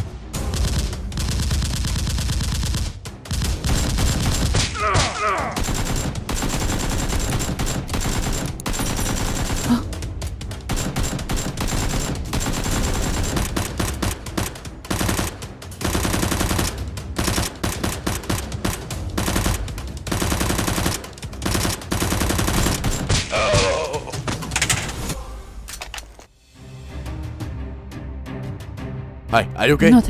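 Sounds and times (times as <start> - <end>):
automatic gunfire bursts: 5.6 - 9.8, 10.7 - 23.1.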